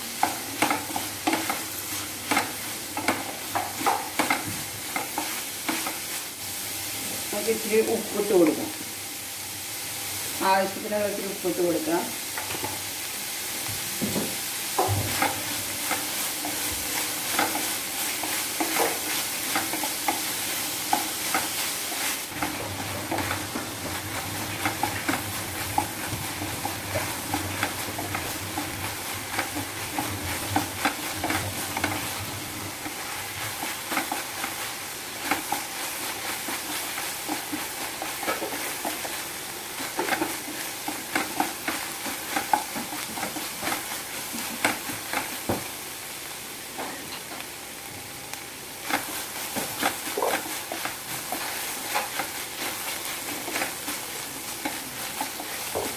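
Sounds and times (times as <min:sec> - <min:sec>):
food sizzling in oil: 0:00.0 - 0:55.9
spoon tapping and scraping pan: 0:00.2 - 0:06.0, 0:14.0 - 0:39.2.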